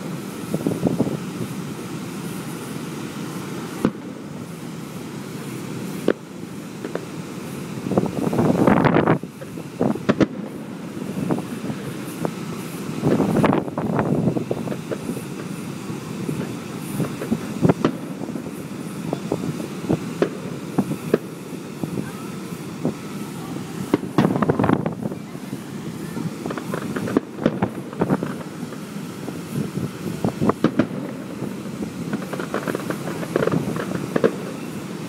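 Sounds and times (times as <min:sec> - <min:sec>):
fireworks bangs: 0:00.0 - 0:35.0
fireworks rumbling booms: 0:00.0 - 0:35.0.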